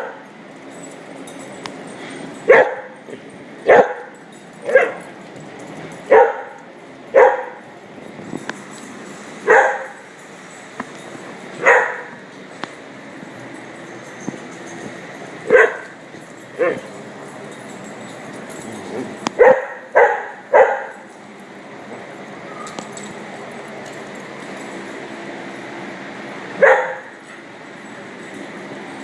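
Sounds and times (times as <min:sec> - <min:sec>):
small dogs barking: 0:02.5 - 0:03.0, 0:03.6 - 0:05.1, 0:06.0 - 0:07.7, 0:09.4 - 0:10.0, 0:11.6 - 0:12.2, 0:15.4 - 0:16.0, 0:16.6 - 0:17.1, 0:18.5 - 0:21.1, 0:26.6 - 0:27.5.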